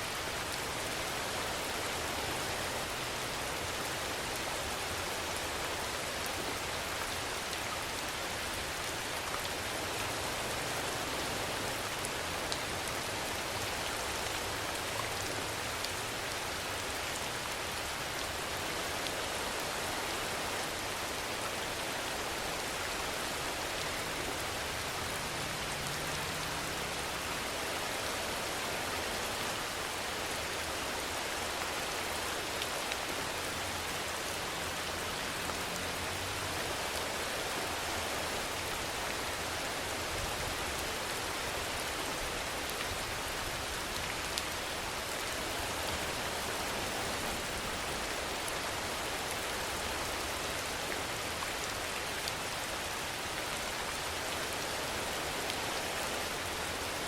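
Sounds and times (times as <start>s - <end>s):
steady rain hiss: 0.0s - 57.0s.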